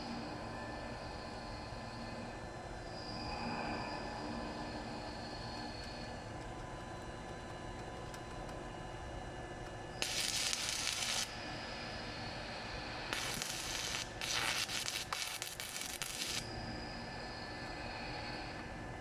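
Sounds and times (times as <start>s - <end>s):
steady hum with whining tones: 0.0s - 19.0s
welding arc crackling and sizzling: 10.0s - 12.1s, 12.8s - 16.4s.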